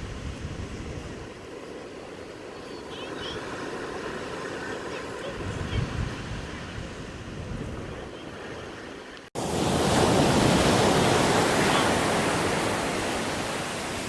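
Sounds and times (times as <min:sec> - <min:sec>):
ocean surf breaking: 0:00.0 - 0:14.0
wind on microphone: 0:00.0 - 0:14.0.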